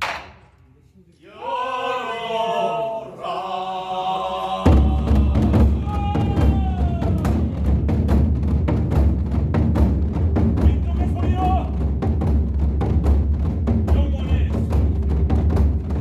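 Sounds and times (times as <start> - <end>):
person chanting: 1.2 - 8.0
barrel drum beating: 4.7 - 16.0.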